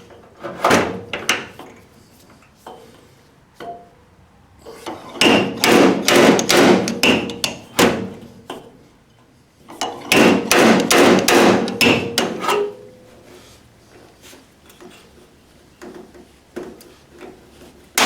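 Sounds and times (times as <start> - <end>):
hammer striking sheet metal: 5.2 - 8.1, 10.1 - 12.8.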